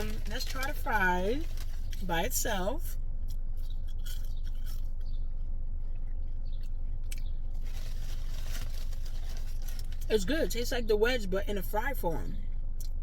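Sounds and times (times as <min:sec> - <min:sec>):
steady low hum: 0:00.0 - 0:13.0
person chewing fries: 0:03.2 - 0:10.1.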